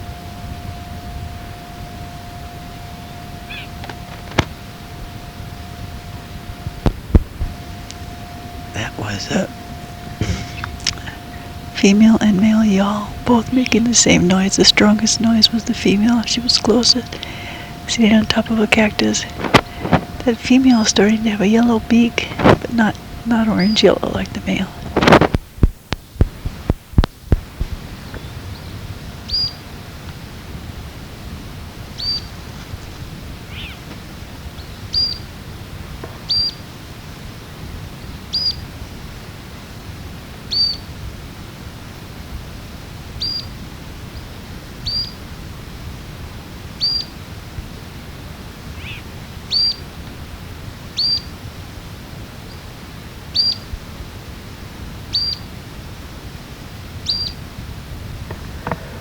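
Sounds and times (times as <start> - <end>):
lower bird calls: 0.0 - 25.2, 28.0 - 29.7, 31.9 - 32.6, 33.4 - 33.9, 34.5 - 35.3, 36.2 - 36.7, 38.0 - 38.9, 40.5 - 41.0, 43.2 - 43.6, 44.2 - 45.3, 46.7 - 47.2, 48.8 - 49.9, 50.9 - 51.4, 53.3 - 53.7, 55.1 - 55.5, 57.0 - 57.5
finch high calls: 3.5 - 3.8, 28.1 - 29.6, 32.0 - 32.4, 33.5 - 33.8, 34.6 - 35.3, 36.2 - 36.6, 38.3 - 38.6, 40.5 - 40.9, 43.2 - 43.5, 44.8 - 45.2, 46.8 - 47.2, 48.8 - 49.8, 51.0 - 51.3, 53.3 - 53.7, 55.1 - 55.5, 57.0 - 57.4.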